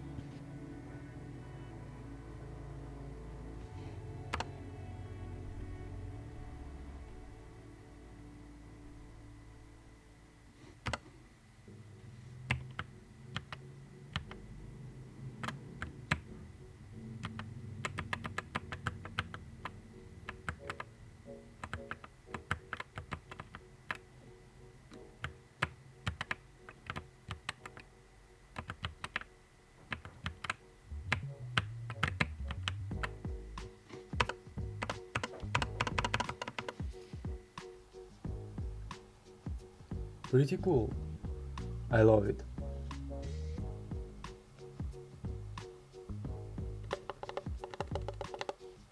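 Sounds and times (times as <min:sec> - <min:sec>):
soft background music: 0:00.0 - 0:48.9.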